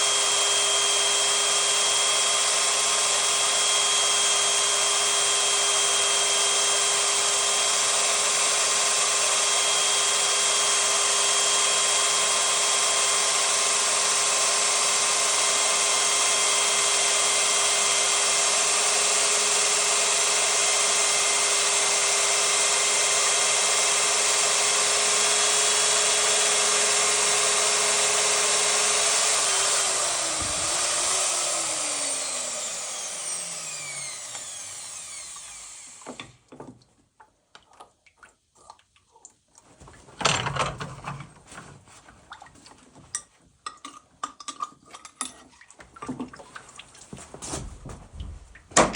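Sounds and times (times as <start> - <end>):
drilling machine motor whine: 0.0 - 36.4.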